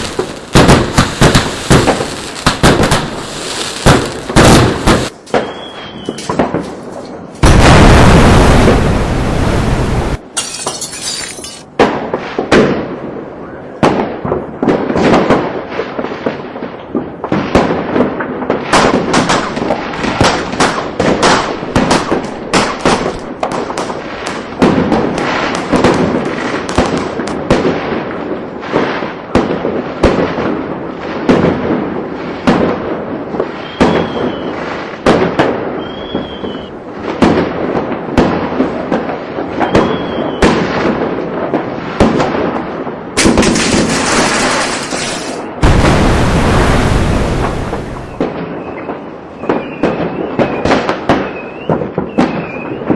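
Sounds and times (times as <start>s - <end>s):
fireworks cracking and popping: 0.0s - 13.1s, 13.8s - 52.9s
loud rushing blast: 7.4s - 10.2s, 45.6s - 48.2s.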